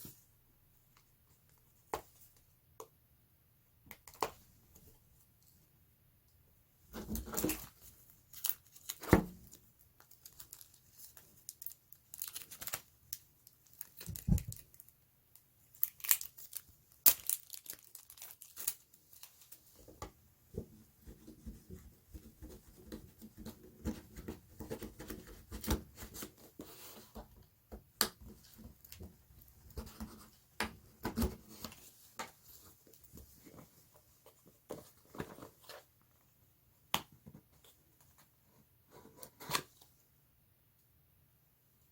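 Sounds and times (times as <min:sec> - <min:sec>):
packaging tearing and crinkling: 0:11.5 - 0:12.8, 0:15.8 - 0:19.3.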